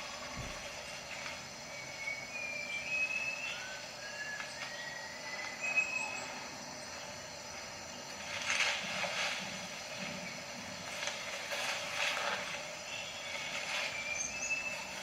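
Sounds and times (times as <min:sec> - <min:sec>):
high insect hum: 0:00.0 - 0:15.0
bird whistling notes: 0:01.7 - 0:06.5, 0:12.9 - 0:15.0.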